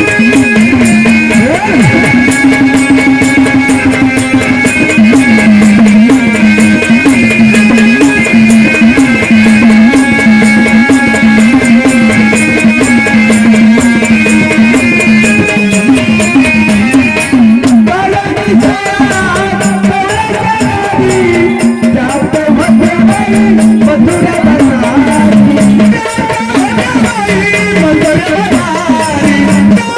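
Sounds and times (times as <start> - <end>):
wavering melodic line: 0.0 - 17.9
percussion and rattle beat: 0.0 - 29.9.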